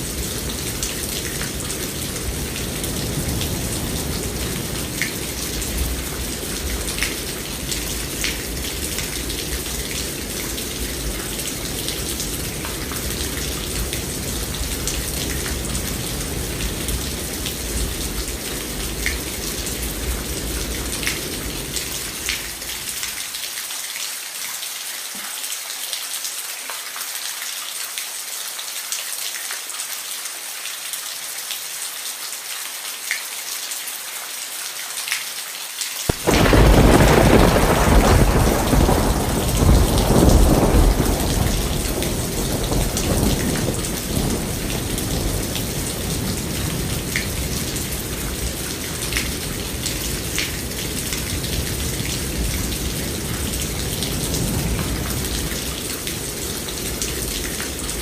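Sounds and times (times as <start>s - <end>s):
rain falling: 0.0s - 58.0s
raindrops ticking: 36.1s - 46.2s
thunder clap and rumble: 36.1s - 58.0s.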